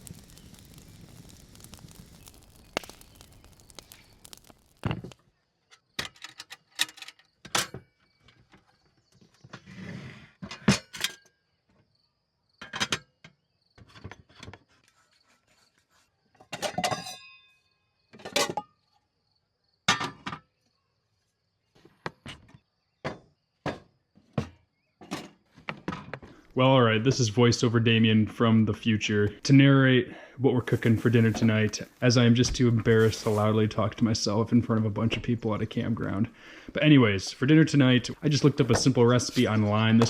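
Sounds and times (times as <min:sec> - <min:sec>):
insect trill: 0:00.0 - 0:05.2, 0:18.8 - 0:19.8
objects knocking and clunking: 0:19.9 - 0:20.5, 0:21.8 - 0:26.4.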